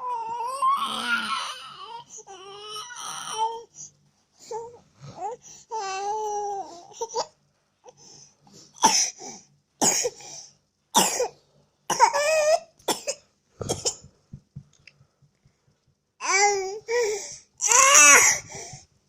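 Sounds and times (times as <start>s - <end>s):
child coughing: 8.8s - 9.2s, 9.8s - 10.2s, 11.0s - 11.3s, 11.9s - 14.1s.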